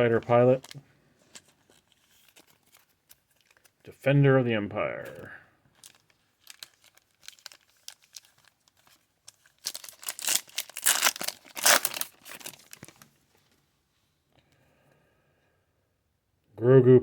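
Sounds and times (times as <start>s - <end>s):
plastic crinkling and rustling: 0.0s - 3.8s, 5.1s - 13.6s.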